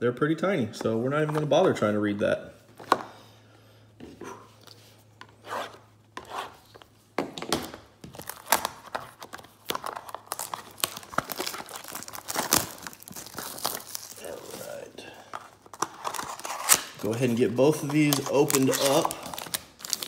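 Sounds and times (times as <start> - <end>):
card packaging torn and crinkled: 8.1 - 14.9, 15.5 - 20.0.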